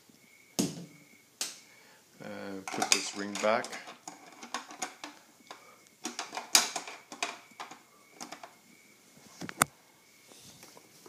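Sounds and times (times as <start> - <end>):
plastic parts clicking and knocking: 2.6 - 8.6.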